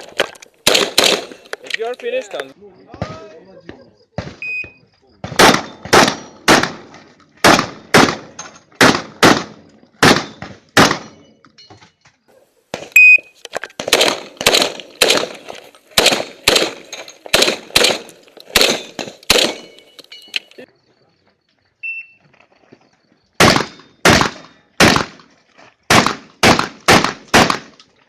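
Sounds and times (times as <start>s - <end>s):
shotgun shots: 0.6s - 1.5s, 5.2s - 11.2s, 13.8s - 19.9s, 23.4s - 25.3s, 25.9s - 27.8s.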